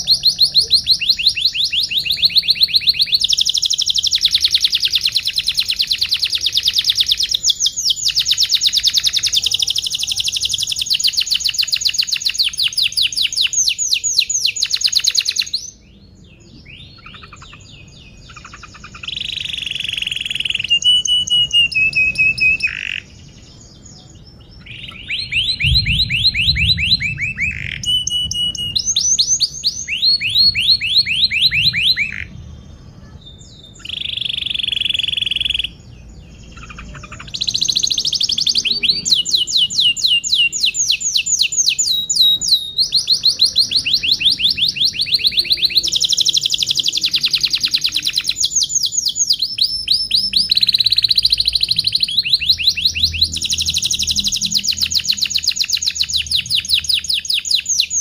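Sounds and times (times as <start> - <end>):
canary singing trills: 0.0 - 58.0.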